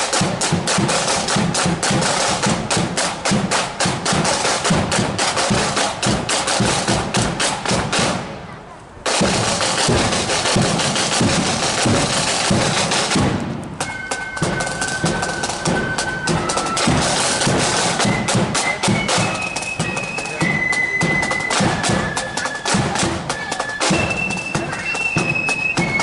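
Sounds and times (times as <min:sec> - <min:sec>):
snare and bass drums marching: 0:00.0 - 0:26.0
flutes playing high melody: 0:13.8 - 0:26.0.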